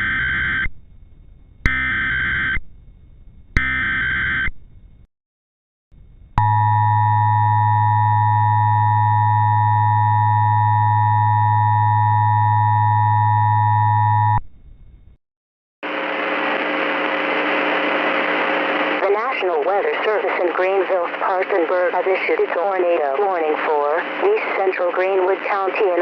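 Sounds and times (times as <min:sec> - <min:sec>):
low hum: 0:00.0 - 0:05.1, 0:06.0 - 0:15.2
hissy radio static: 0:15.8 - 0:26.0.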